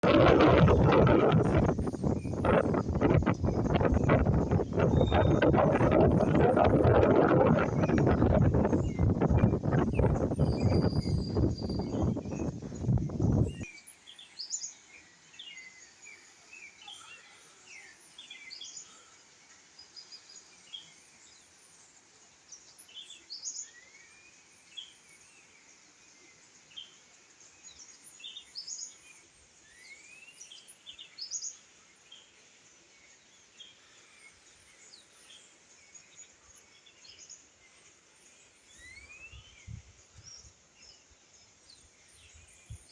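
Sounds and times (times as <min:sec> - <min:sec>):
birds chirping and calling: 0:00.6 - 0:13.6
rising whistled bird notes: 0:01.3 - 0:13.7
faint steady hiss: 0:12.0 - 0:42.9.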